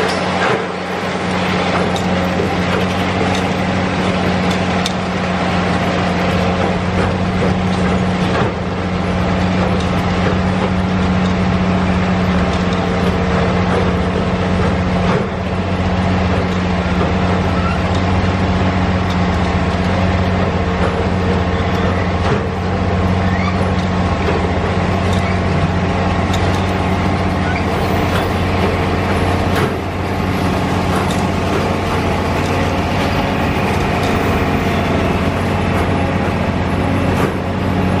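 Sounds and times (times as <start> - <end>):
heavy engine humming: 0.0 - 38.0.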